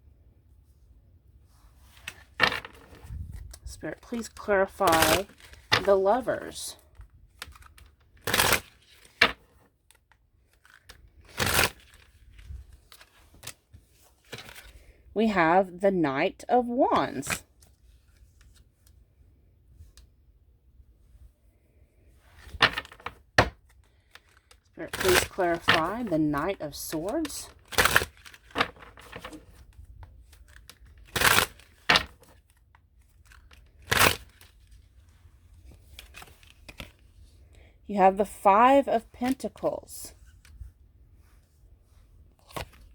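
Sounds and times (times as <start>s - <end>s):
cards being shuffled: 1.8s - 6.2s, 7.0s - 14.8s, 22.3s - 34.9s, 35.6s - 37.2s, 42.3s - 42.9s.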